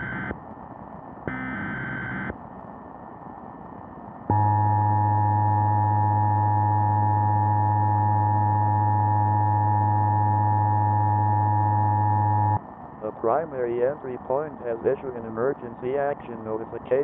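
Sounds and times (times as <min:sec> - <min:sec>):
strong low hum: 0:00.0 - 0:16.7.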